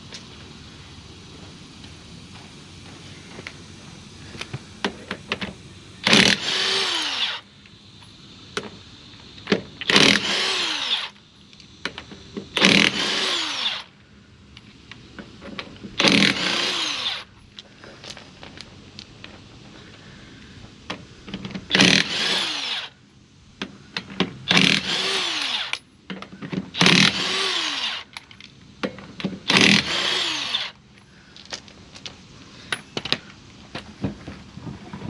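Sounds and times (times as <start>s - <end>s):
impact wrench hammering lug nuts: 12.6s - 13.3s, 24.1s - 25.8s, 26.8s - 27.4s, 29.3s - 30.6s.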